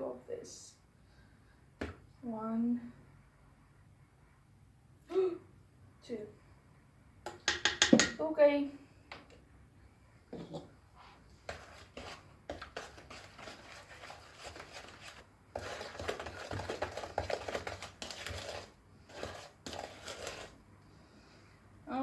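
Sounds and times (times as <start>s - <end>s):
utensil scraping and clicking in bowl: 11.4s - 20.6s.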